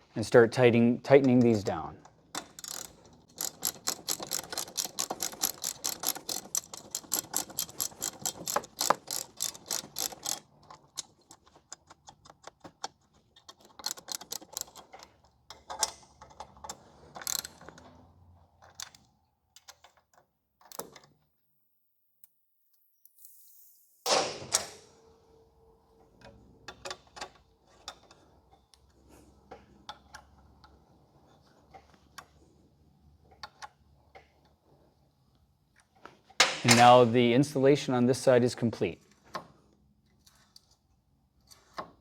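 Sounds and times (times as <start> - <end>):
socket ratchet clicking: 2.4 - 17.8.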